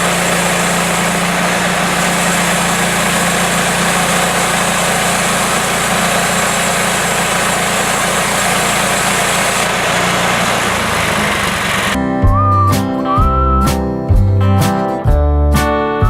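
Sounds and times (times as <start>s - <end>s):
small gasoline engine running: 0.0s - 12.0s.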